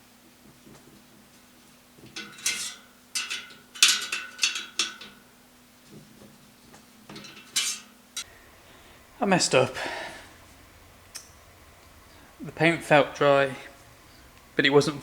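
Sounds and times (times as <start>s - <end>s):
faint steady hum: 0.0s - 15.0s
small metal parts clinking: 2.1s - 5.3s, 7.1s - 8.3s.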